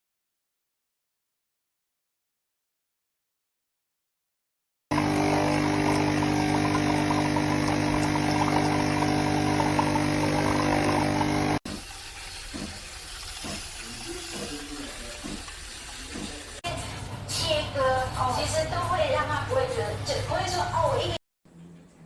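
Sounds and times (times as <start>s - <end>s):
coffee machine pump humming: 4.9s - 16.6s.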